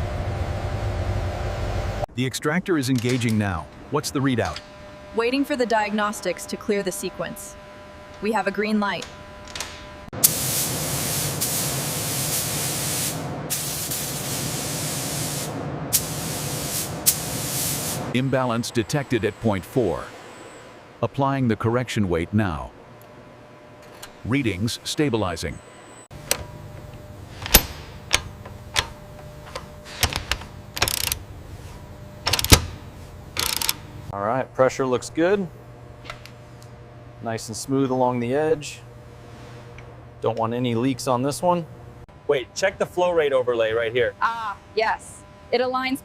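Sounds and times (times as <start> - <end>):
low machine hum: 0.0 - 13.6, 18.1 - 46.0
high-pressure spray hissing: 10.2 - 18.1
sharp mechanical clicks and knocks: 26.2 - 31.2, 32.2 - 32.8, 33.4 - 33.9.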